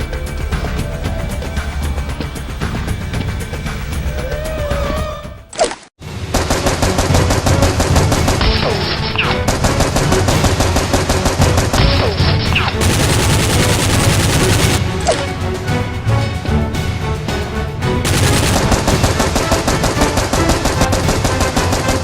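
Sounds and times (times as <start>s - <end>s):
background music: 0.0s - 22.0s
rapid automatic gunfire: 6.3s - 14.8s, 18.0s - 22.0s.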